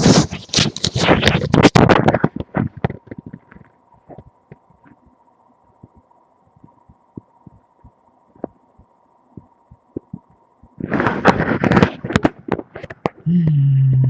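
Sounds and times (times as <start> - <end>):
microphone rubbing and scraping: 0.0 - 4.3, 10.8 - 14.0
steady hum: 0.0 - 14.0.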